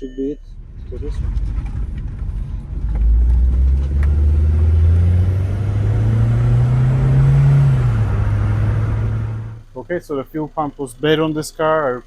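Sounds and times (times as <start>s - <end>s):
car engine revving: 0.5s - 9.7s.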